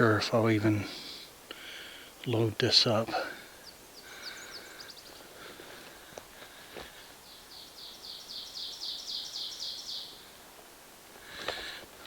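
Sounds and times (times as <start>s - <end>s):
bird singing: 2.2s - 5.4s, 7.0s - 10.4s.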